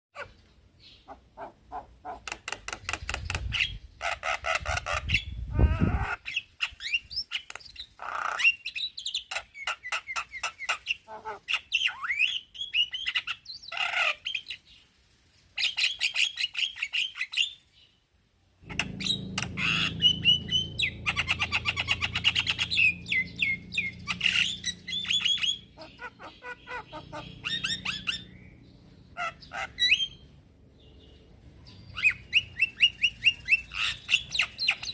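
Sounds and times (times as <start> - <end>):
bird singing with chatter and whistles: 18.7 - 34.9.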